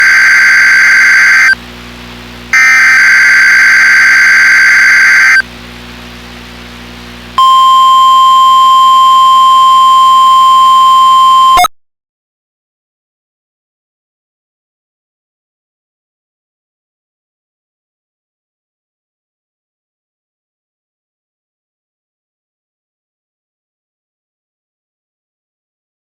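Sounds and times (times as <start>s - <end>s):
harsh digital data bursts: 0.0s - 1.6s, 2.6s - 5.4s
steady warning alarm tone: 0.0s - 1.6s, 2.6s - 5.4s.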